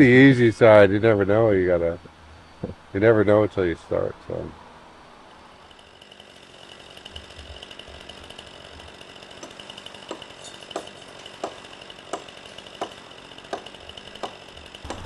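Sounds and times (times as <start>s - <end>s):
tool knocking on wood: 12.8s - 15.0s.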